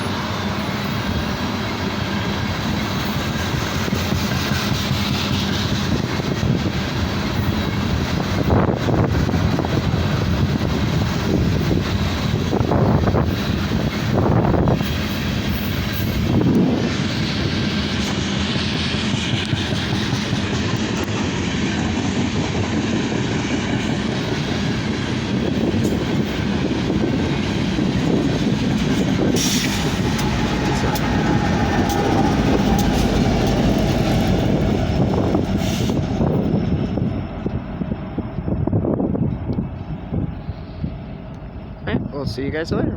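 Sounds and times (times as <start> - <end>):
steel wheels clattering on rails: 0.0 - 39.6
freight train rumbling past: 0.0 - 42.9.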